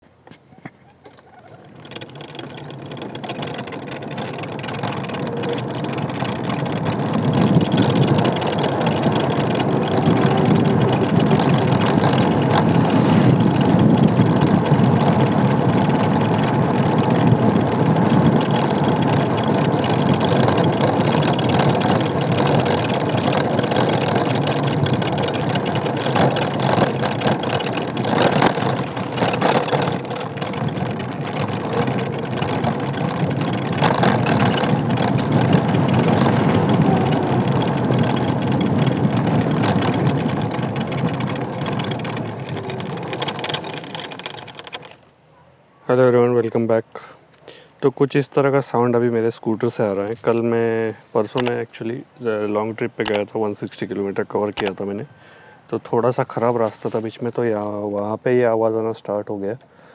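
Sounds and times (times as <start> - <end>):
road and wind noise: 0.0 - 45.7, 48.0 - 58.4
scooter dashboard rattling: 0.3 - 45.1, 51.3 - 51.7, 52.9 - 55.0.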